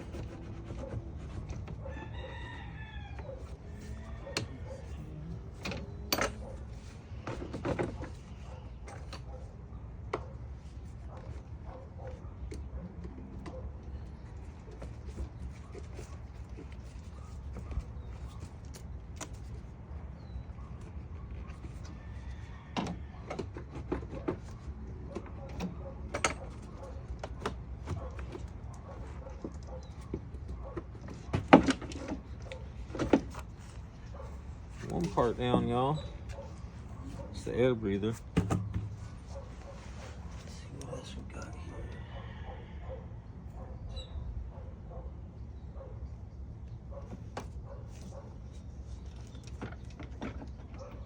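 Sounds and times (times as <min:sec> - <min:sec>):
clunks of air box removal: 0:38.2 - 0:39.2.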